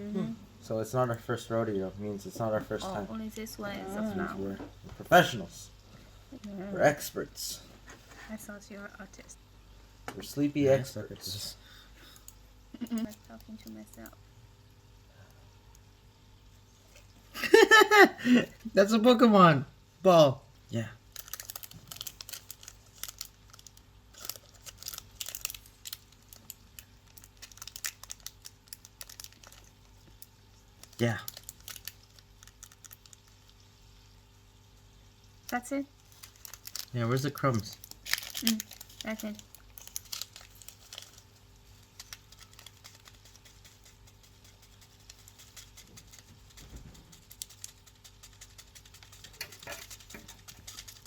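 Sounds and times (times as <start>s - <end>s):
low steady hum: 0.0s - 51.0s
plastic packaging crinkling: 21.0s - 33.7s, 36.0s - 51.0s.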